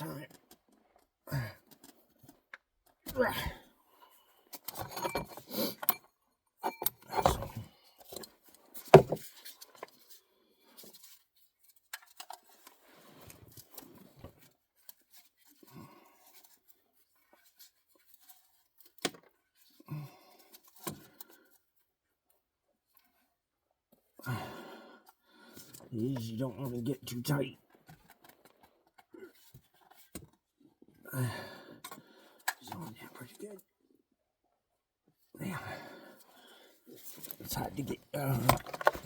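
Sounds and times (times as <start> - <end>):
metal tools clinking and knocking: 4.6 - 7.6.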